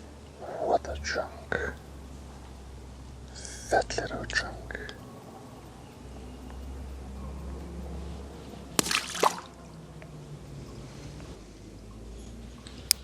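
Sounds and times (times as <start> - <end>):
water splashing and dripping: 8.8 - 9.8.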